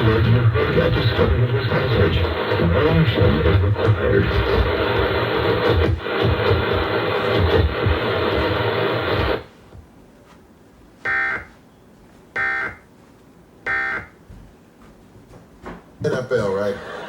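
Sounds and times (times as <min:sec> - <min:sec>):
broadcast audio from speaker: 0:00.0 - 0:09.5, 0:16.0 - 0:17.0
buzzy electronic beeps: 0:11.1 - 0:11.5, 0:12.4 - 0:12.8, 0:13.7 - 0:14.2.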